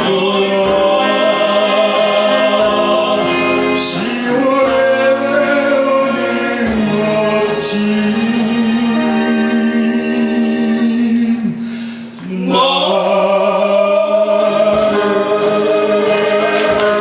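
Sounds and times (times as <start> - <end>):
live band with singing: 0.0 - 17.0.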